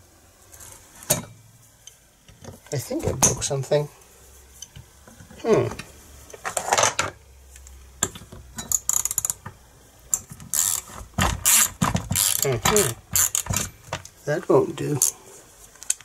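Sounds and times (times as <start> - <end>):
ratchet clicking: 8.7 - 9.4, 10.1 - 13.7.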